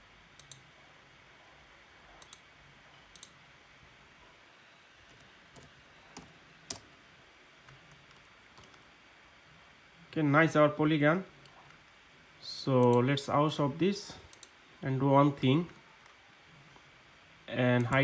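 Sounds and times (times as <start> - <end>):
faint steady hiss: 0.0 - 18.0
computer mouse buttons clicking: 0.4 - 0.6, 2.2 - 2.4, 3.1 - 3.4, 5.1 - 6.9, 14.3 - 14.6.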